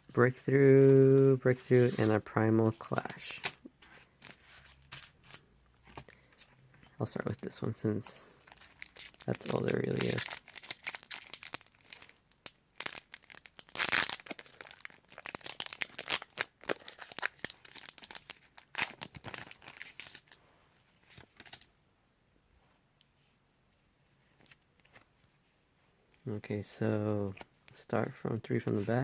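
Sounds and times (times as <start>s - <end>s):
foil wrapper tearing and crinkling: 8.6s - 20.3s.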